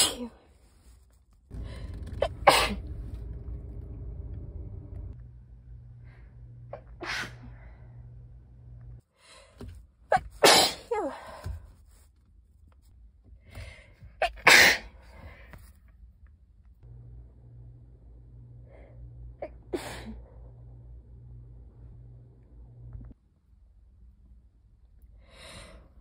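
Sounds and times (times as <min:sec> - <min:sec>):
person sneezing: 0:00.0 - 0:00.4, 0:06.8 - 0:07.5, 0:10.1 - 0:11.3, 0:14.2 - 0:15.0.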